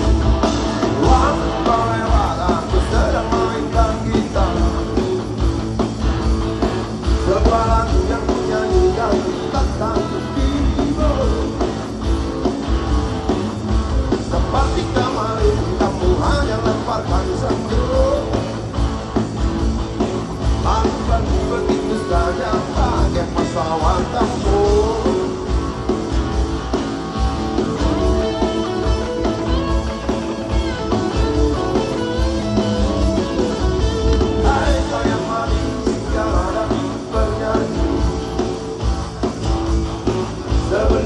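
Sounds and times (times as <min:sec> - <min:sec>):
drums keeping a steady beat: 0:00.0 - 0:41.0
electric guitar: 0:00.0 - 0:41.0
person singing: 0:00.9 - 0:05.0, 0:20.6 - 0:25.4, 0:34.2 - 0:38.2.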